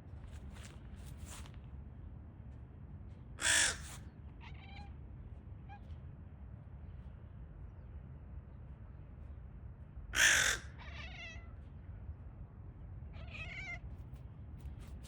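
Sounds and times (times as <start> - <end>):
cat meowing: 10.8 - 11.5, 13.2 - 13.8.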